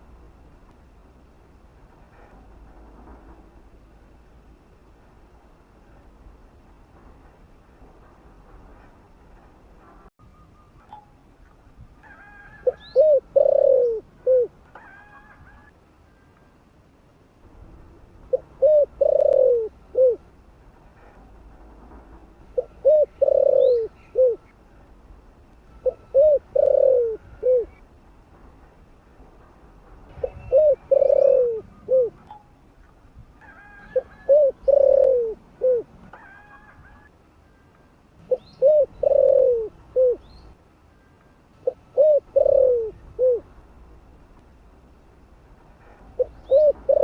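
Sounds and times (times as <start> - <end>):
dove cooing: 12.5 - 14.5, 18.3 - 20.2, 22.6 - 24.5, 25.8 - 27.8, 30.2 - 32.2, 33.5 - 36.8, 38.2 - 40.3, 41.6 - 43.5, 46.2 - 47.0.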